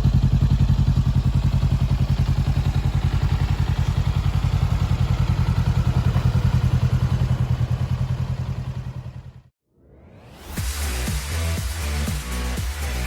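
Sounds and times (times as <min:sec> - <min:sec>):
motorcycle engine idling: 0:00.0 - 0:09.5.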